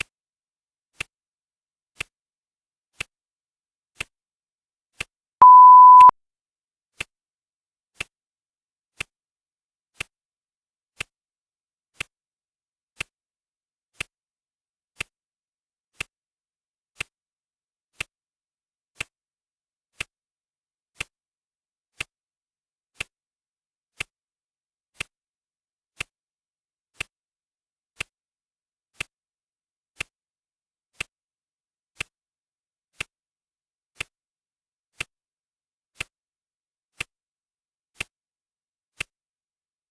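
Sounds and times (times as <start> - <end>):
short timer beep: 5.4 - 6.1.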